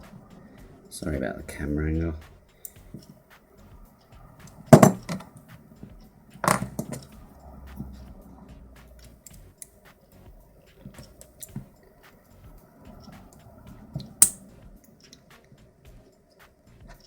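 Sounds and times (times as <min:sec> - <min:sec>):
small clicks of lock pieces: 0:02.6 - 0:03.1, 0:04.0 - 0:07.2, 0:10.9 - 0:11.8, 0:13.0 - 0:17.0
lock parts knocked down: 0:04.6 - 0:05.3, 0:06.4 - 0:07.1, 0:14.2 - 0:14.4.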